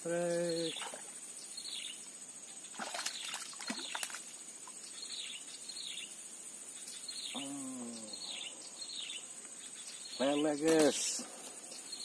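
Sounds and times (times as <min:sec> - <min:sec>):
high-pitched insect drone: 0:07.2 - 0:11.0.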